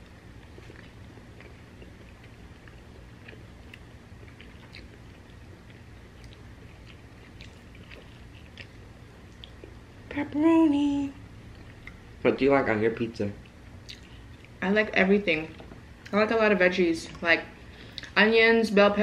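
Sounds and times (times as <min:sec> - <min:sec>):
people chewing pizza: 0:00.0 - 0:09.8, 0:11.4 - 0:12.1, 0:12.7 - 0:14.6
low steady hum: 0:00.0 - 0:19.0
wet mouth clicks and smacks: 0:13.4 - 0:14.6.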